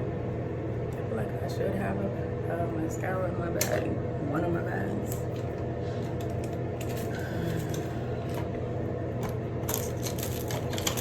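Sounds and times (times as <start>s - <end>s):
steady low hum: 0.0s - 11.0s
small items clicking and rattling: 9.6s - 11.0s.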